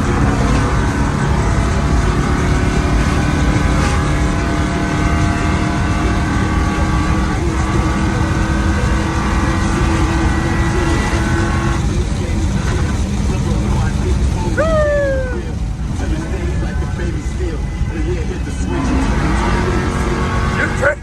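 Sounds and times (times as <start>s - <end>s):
car engine running: 0.0s - 21.0s
road and wind noise: 0.0s - 21.0s.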